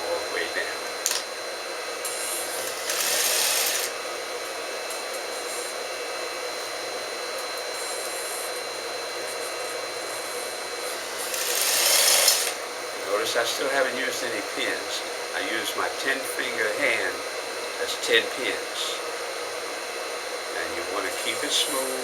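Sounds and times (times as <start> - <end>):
sewing machine motor hum: 0.0 - 4.1, 9.5 - 17.0
sewing machine stitching: 2.6 - 3.9, 11.2 - 12.6.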